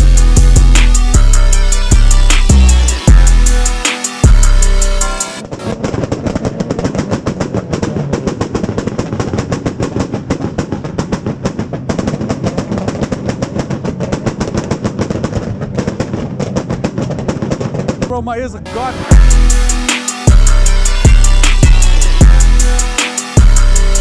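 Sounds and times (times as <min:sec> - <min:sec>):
car exhaust pops and bangs: 0:05.5 - 0:18.4.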